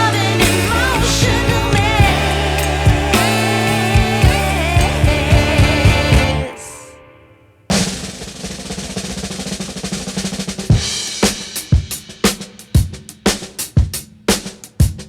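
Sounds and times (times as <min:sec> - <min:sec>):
background music with drums: 0:00.0 - 0:06.6, 0:07.7 - 0:15.0
snare drum roll: 0:07.7 - 0:15.0.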